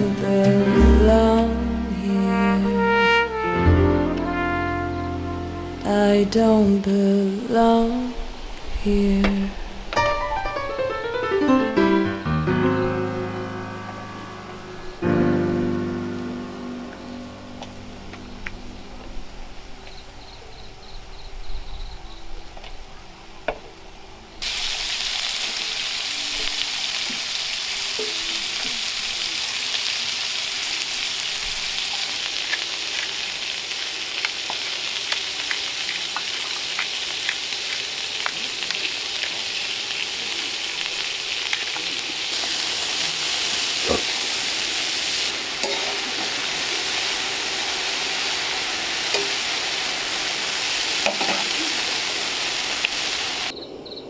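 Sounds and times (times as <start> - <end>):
beef sizzling in a pan: 24.4 - 53.5.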